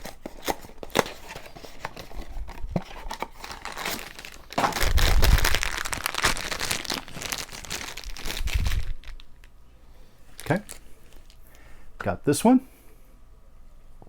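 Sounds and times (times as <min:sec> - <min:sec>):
packaging crinkling and tearing: 0:00.0 - 0:09.6, 0:10.3 - 0:11.4.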